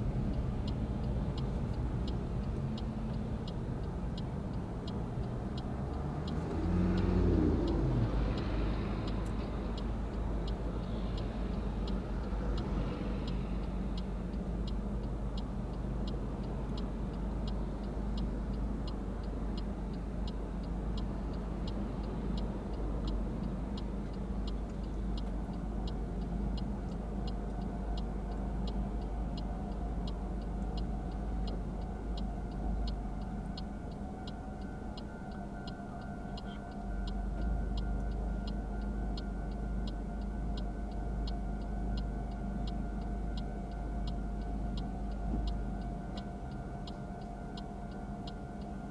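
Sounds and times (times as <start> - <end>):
car engine rumbling: 0.0 - 48.9
engine revving: 5.6 - 9.4
level crossing warning bell: 25.7 - 48.9.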